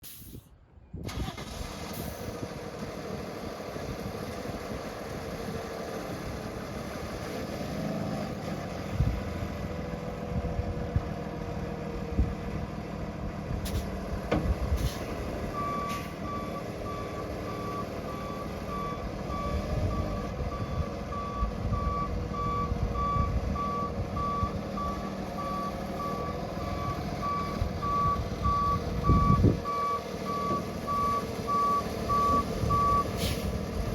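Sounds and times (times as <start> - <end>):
truck engine running: 1.1 - 33.9
backup alarm beeping: 20.6 - 33.1.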